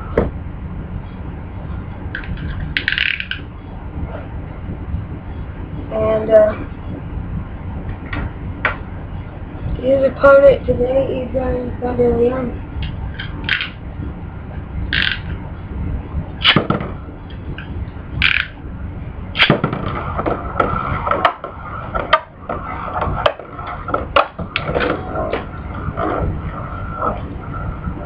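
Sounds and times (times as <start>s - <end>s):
spinning tops clashing: 2.2s - 3.5s, 13.2s - 13.8s, 14.9s - 15.3s, 18.2s - 18.6s
spinning tops whirring: 12.8s - 13.8s, 14.9s - 15.4s, 17.5s - 18.6s.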